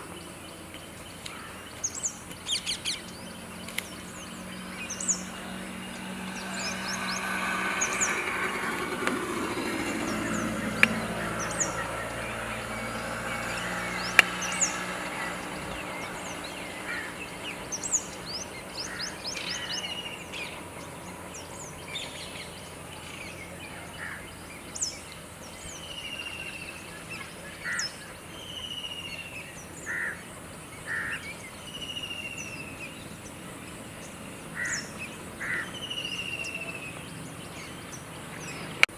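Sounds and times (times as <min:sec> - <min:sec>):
low drone falling in pitch: 0:00.0 - 0:27.5
water birds calling: 0:00.0 - 0:38.9.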